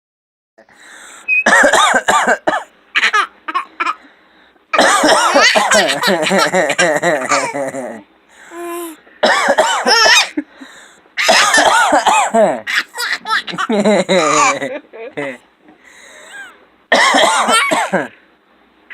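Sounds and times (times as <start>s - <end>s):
man coughing: 1.5s - 2.7s, 4.8s - 8.0s, 9.2s - 10.5s, 11.2s - 12.7s, 16.3s - 18.2s
baby laughing: 3.0s - 4.0s, 5.0s - 9.0s, 11.2s - 15.4s.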